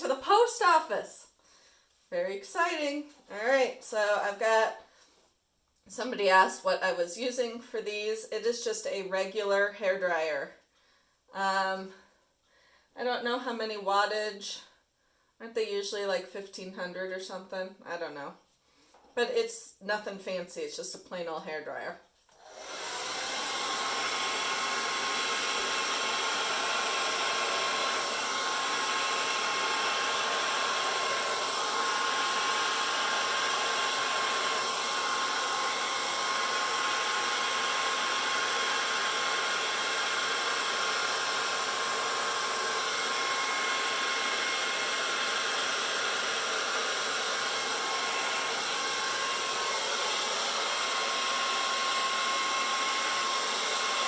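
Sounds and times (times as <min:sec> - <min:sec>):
hair dryer blowing: 0:00.0 - 0:01.0, 0:22.3 - 0:54.0.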